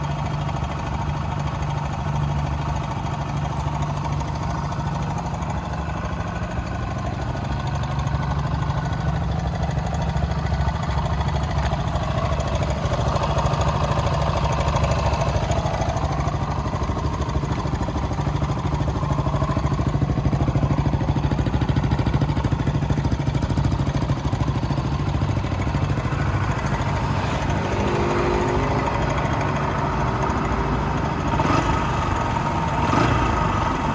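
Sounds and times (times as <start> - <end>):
motorcycle engine idling: 0.0 - 33.9.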